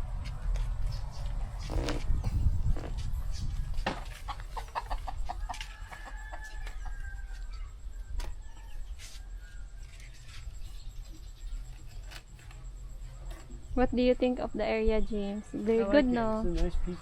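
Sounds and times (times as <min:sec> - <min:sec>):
chicken clucking: 0:04.2 - 0:07.7.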